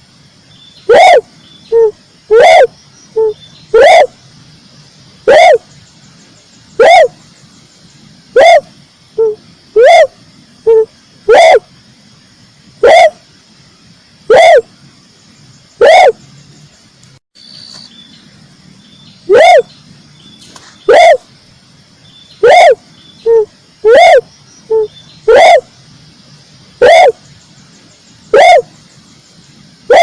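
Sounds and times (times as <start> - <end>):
dove cooing: 0.9 - 4.2, 5.2 - 5.7, 6.8 - 7.2, 8.4 - 11.7, 12.8 - 13.2, 14.3 - 14.7, 15.8 - 16.2, 19.3 - 19.7, 20.9 - 21.3, 22.4 - 25.7, 26.8 - 27.2, 28.3 - 28.7.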